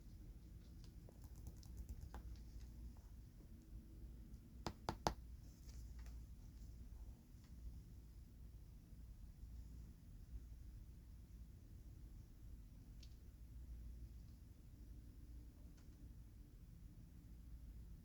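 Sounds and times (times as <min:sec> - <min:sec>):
sharp clicks: 0:01.1 - 0:02.4
light tapping of handled cards: 0:04.6 - 0:06.2.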